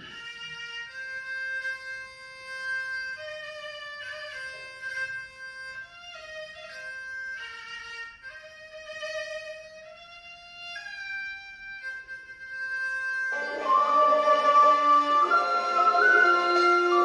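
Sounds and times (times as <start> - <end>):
bowed fiddle slow melody: 0.0 - 17.0.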